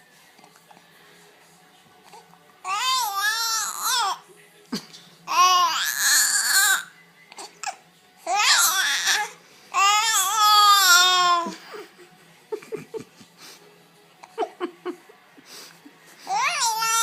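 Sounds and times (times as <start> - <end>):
baby squealing: 5.3 - 6.9, 8.3 - 11.5, 16.3 - 17.0.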